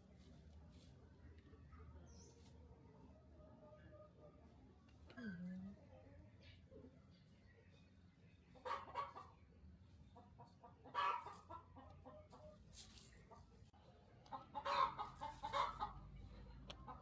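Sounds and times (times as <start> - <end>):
chickens clucking: 8.4 - 17.0.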